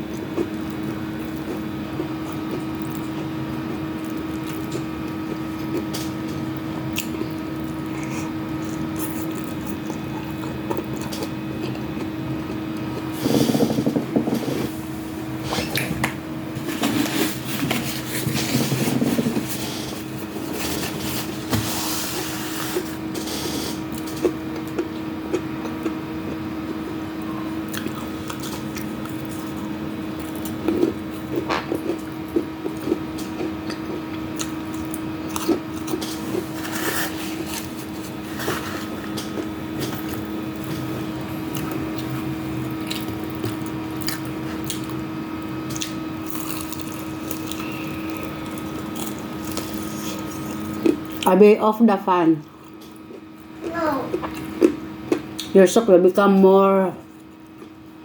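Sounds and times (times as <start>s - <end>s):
person chewing: 0.0s - 14.7s, 27.7s - 29.6s, 30.2s - 45.0s, 45.7s - 51.2s, 52.4s - 55.5s
electric fan humming: 0.0s - 58.0s.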